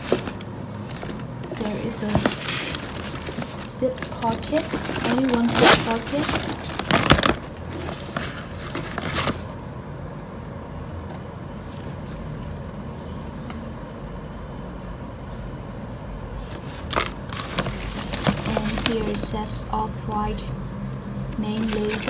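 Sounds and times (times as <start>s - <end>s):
plastic bag rustling: 0.0s - 9.6s, 16.4s - 20.5s, 21.4s - 22.0s.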